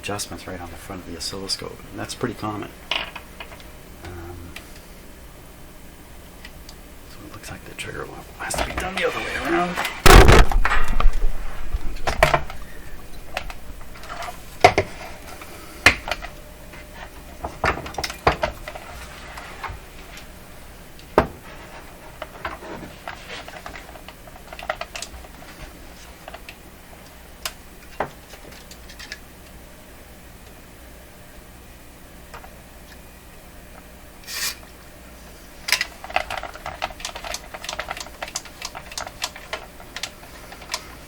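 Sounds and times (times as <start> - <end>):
loud knock: 10.0 - 11.2.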